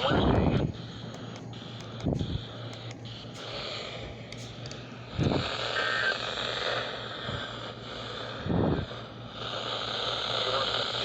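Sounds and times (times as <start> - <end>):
radio static hiss: 0.0 - 3.9, 5.1 - 7.4, 9.5 - 11.0.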